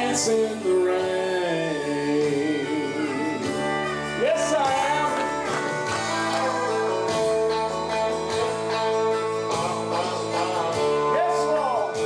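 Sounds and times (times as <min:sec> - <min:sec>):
guitar strumming chords: 0:00.0 - 0:12.0
sustained accompaniment: 0:02.7 - 0:11.2.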